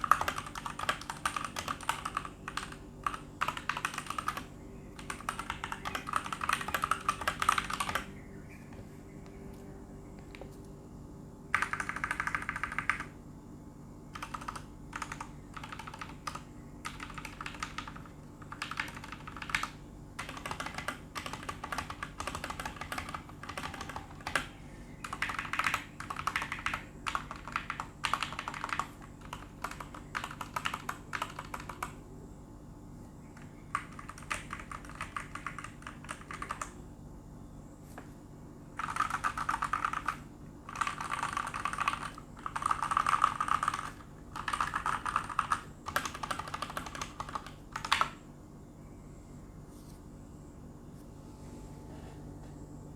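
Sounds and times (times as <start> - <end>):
mechanical keyboard typing: 0.0 - 8.1, 11.5 - 13.1, 14.1 - 32.0, 33.7 - 36.8, 38.8 - 48.2.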